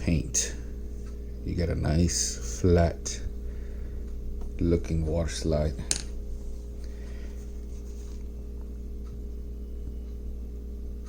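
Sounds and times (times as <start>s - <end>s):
low electrical hum: 0.0s - 11.0s
faint soft rustle: 6.4s - 8.4s.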